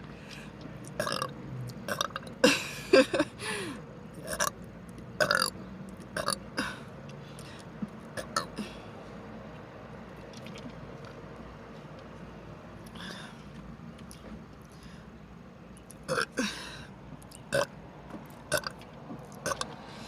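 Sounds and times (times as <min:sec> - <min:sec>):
woman burping: 0:01.0 - 0:01.3, 0:01.9 - 0:03.2, 0:05.2 - 0:05.5, 0:16.1 - 0:16.7.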